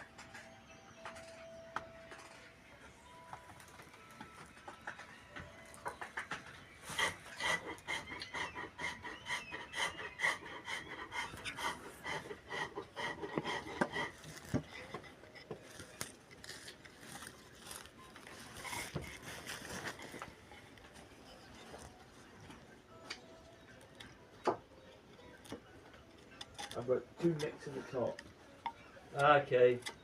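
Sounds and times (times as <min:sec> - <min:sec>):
hand tool working wood: 0:06.9 - 0:16.1.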